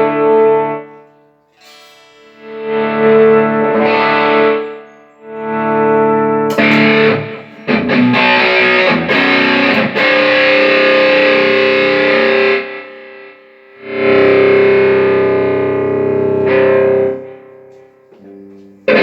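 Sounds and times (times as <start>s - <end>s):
distorted electric guitar chords: 0.0s - 19.0s.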